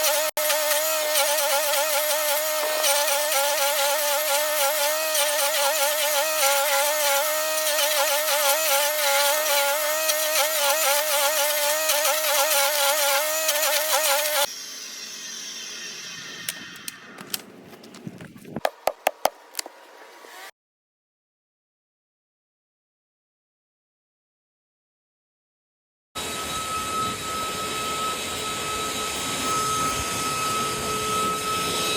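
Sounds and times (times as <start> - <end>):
falling whine: 26.2 - 31.9.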